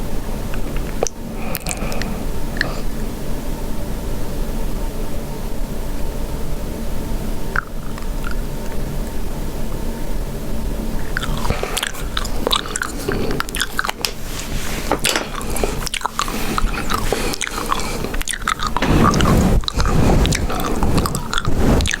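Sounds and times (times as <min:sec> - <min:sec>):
gum chewing mouth clicks: 0:07.5 - 0:09.2, 0:11.0 - 0:14.2, 0:15.0 - 0:22.0.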